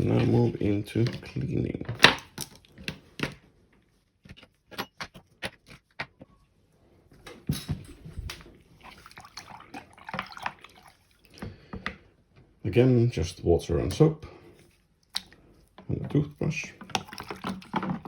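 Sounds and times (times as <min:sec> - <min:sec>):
plastic parts clicking and knocking: 0:01.0 - 0:03.4, 0:04.2 - 0:06.4, 0:15.2 - 0:18.0
plastic parts clattering and rustling: 0:04.2 - 0:06.4, 0:15.8 - 0:18.0.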